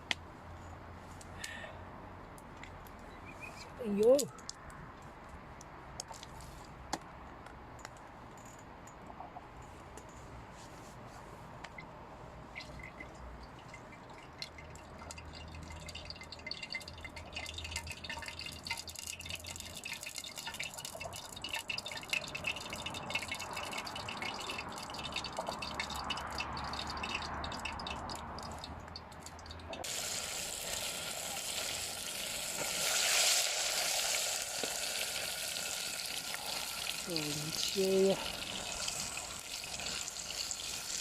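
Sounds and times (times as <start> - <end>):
oil crackling and popping: 12.6 - 41.0
tofu sizzling in hot oil: 29.8 - 41.0.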